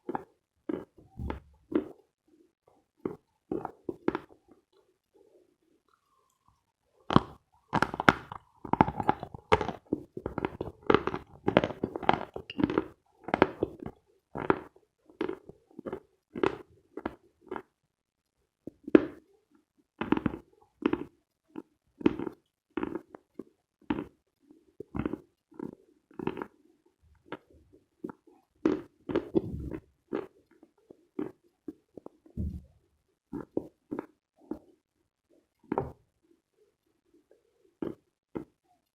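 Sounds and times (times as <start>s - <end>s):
chalk being chewed with crunches: 27.3s - 32.3s.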